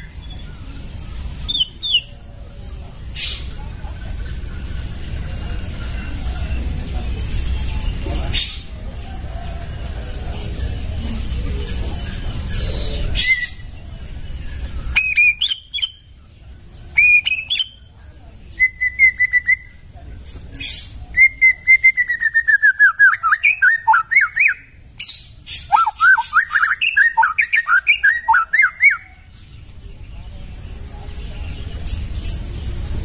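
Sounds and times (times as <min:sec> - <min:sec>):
bird singing whistled phrases: 0:01.4 - 0:02.2, 0:12.5 - 0:13.7, 0:14.6 - 0:16.1, 0:16.9 - 0:17.9, 0:18.5 - 0:19.8, 0:20.6 - 0:29.4.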